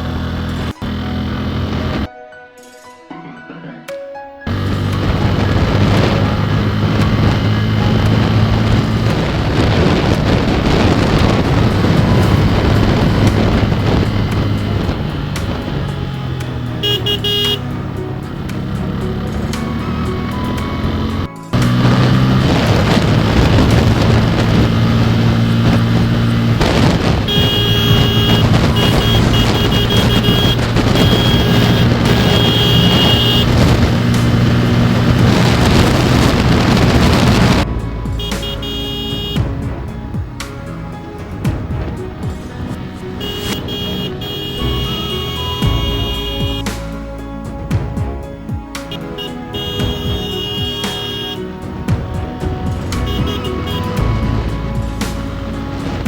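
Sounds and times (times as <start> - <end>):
motorcycle engine running: 0.0 - 2.1, 4.5 - 56.0
wind buffeting microphone: 4.5 - 19.0, 20.4 - 38.6, 51.5 - 56.0
high thin tone: 27.2 - 33.6.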